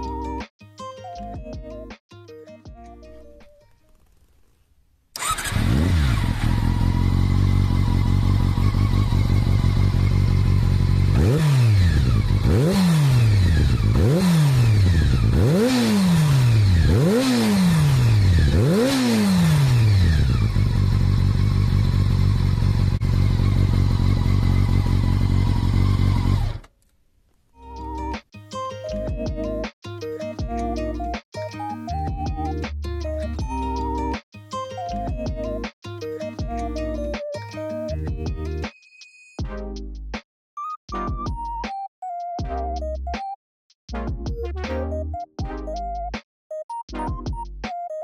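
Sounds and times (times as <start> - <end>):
motorcycle engine idling: 5.2 - 11.2, 19.9 - 26.6
motorcycle engine revving: 5.2 - 26.7.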